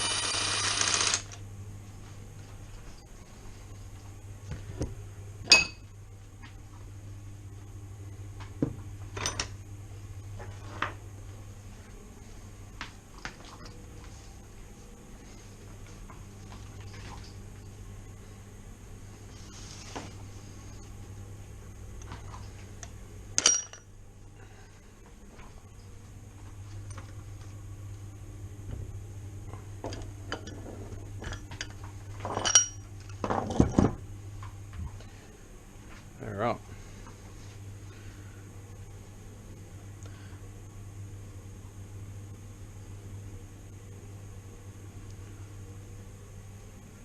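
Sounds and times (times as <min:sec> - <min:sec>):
steady low hum: 0:00.0 - 0:47.0
metal tools clinking: 0:23.4 - 0:23.8, 0:32.4 - 0:32.8.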